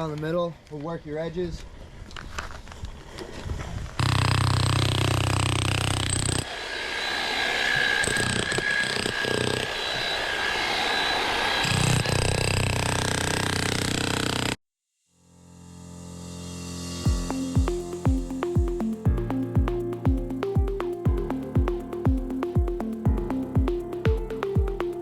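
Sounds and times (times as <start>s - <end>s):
power tool motor whine: 4.0s - 14.6s.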